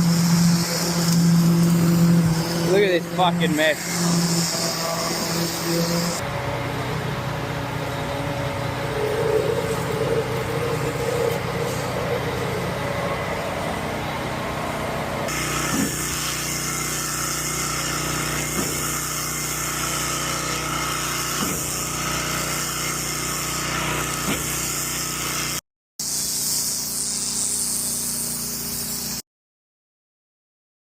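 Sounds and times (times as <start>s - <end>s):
truck engine running: 0.0s - 20.4s.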